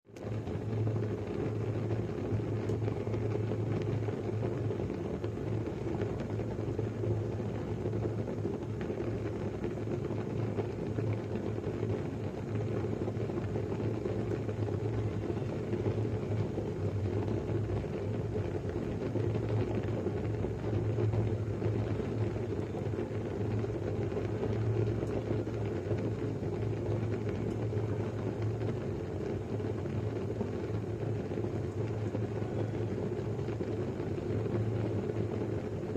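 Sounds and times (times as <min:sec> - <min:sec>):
pot of rice boiling: 0:00.0 - 0:35.9.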